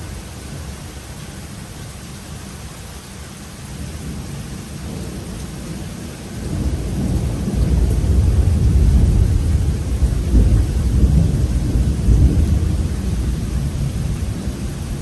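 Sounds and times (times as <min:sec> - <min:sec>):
steady rain falling: 0:00.0 - 0:15.0
low thunder rumble: 0:04.0 - 0:15.0.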